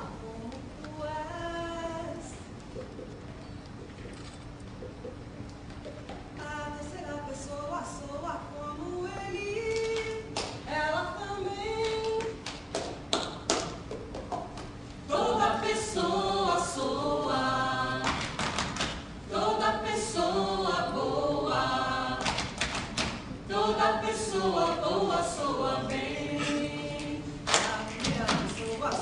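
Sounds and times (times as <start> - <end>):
group singing a cappella: 6.4 - 12.4, 15.0 - 29.0
percussive taps or claps: 11.8 - 14.7, 18.0 - 19.0, 22.2 - 23.2.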